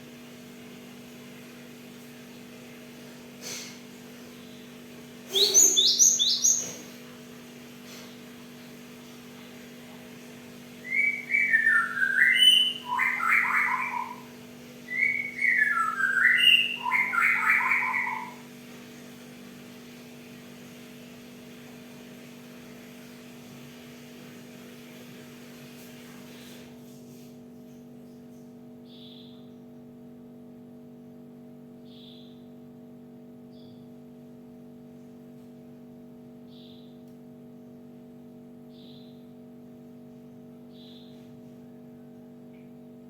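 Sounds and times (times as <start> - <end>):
low background hum: 0.0 - 43.0
bird singing whistled notes: 5.3 - 6.8, 10.8 - 14.3, 14.9 - 18.4.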